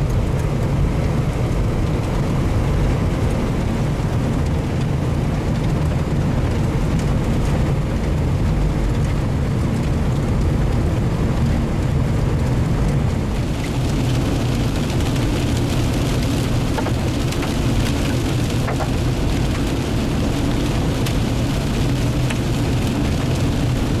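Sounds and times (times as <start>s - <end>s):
rain hitting vehicle: 0.0s - 24.0s
vehicle rumbling on road: 0.0s - 24.0s
hailstones ticking: 12.4s - 24.0s.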